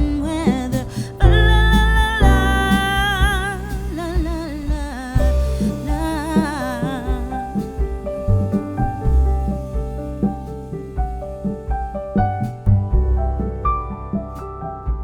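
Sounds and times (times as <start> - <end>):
woman singing: 0.0 - 8.4
bass and keyboard accompaniment: 0.0 - 15.0.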